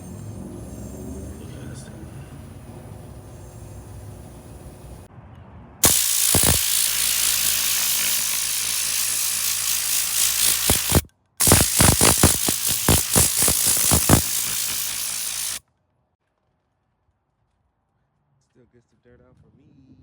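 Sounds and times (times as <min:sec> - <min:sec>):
air blow gun hissing: 0:00.0 - 0:05.1, 0:05.8 - 0:15.6
compressor low hum: 0:00.0 - 0:05.1, 0:05.8 - 0:15.6
short air blasts: 0:00.0 - 0:05.1, 0:05.8 - 0:15.6.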